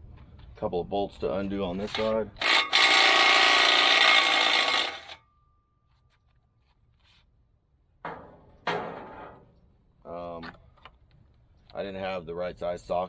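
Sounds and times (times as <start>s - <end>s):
impact wrench hammering: 2.4s - 5.2s.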